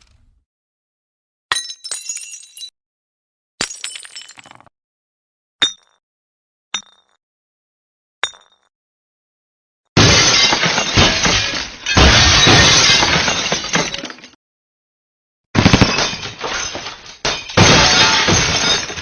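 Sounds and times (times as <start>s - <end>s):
glass shattering crash: 3.6s - 4.7s, 10.0s - 14.4s, 15.6s - 19.0s.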